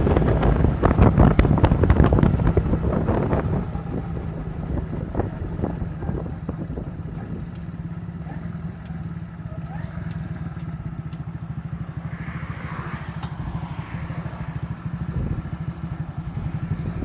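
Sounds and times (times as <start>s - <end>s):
wind buffeting microphone: 0.0s - 7.8s, 11.9s - 17.0s
motorcycle engine running: 0.0s - 17.0s.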